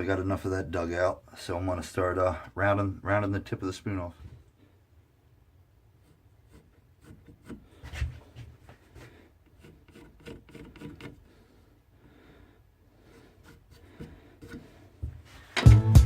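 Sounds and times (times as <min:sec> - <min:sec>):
blade shaving wood: 0:06.0 - 0:07.8, 0:09.5 - 0:11.4.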